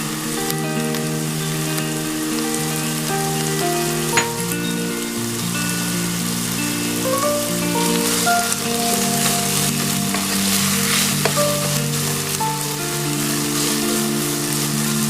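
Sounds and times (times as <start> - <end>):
background music: 0.0 - 15.0
food sizzling in a pan: 0.0 - 15.0.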